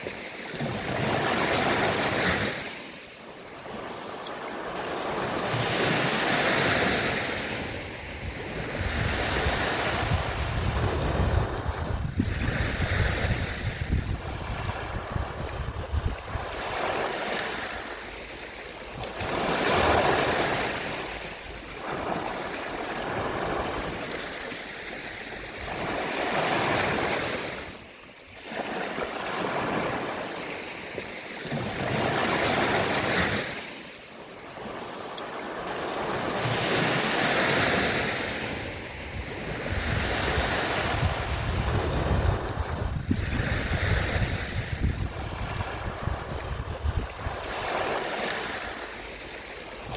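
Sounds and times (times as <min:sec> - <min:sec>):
sea waves washing ashore: 0:00.0 - 0:49.9
wind rumble: 0:07.6 - 0:17.6, 0:38.7 - 0:49.2.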